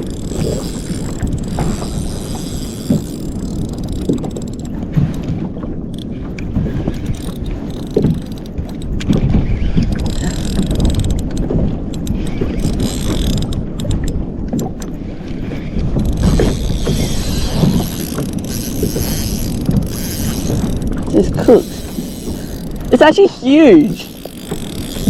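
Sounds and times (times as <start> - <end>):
fishing reel whirring: 0.0 - 5.3, 5.9 - 14.0, 14.8 - 25.0
water slapping against kayak hull: 0.0 - 25.0
wind buffeting microphone: 0.0 - 25.0.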